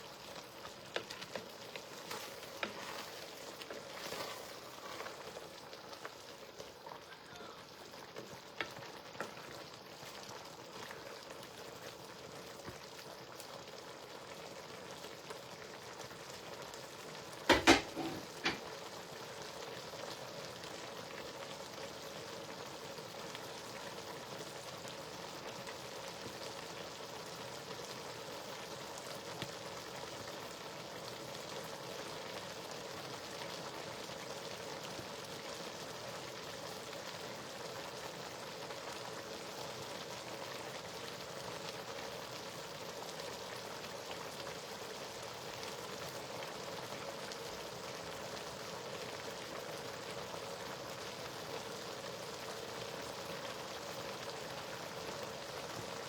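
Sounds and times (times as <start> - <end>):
food sizzling: 0.0 - 56.0
sharp knocks: 17.5 - 18.6.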